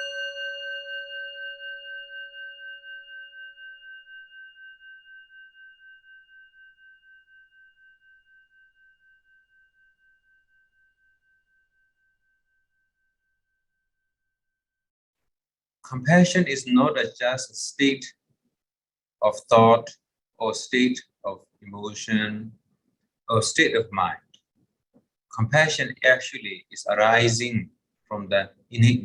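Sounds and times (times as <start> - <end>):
singing bowl ringing: 0.0 - 14.8.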